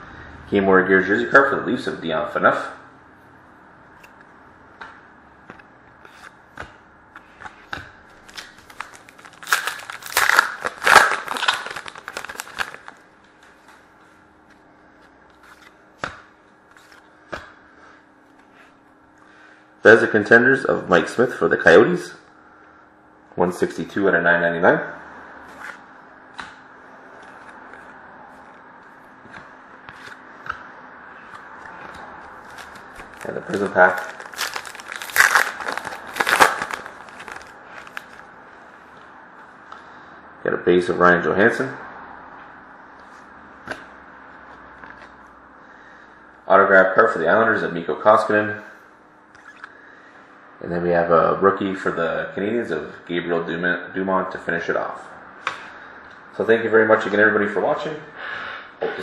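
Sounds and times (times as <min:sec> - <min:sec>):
steady room hiss: 0:00.0 - 0:59.0
plastic wrapper crinkling and tearing: 0:08.1 - 0:13.0, 0:32.3 - 0:38.3.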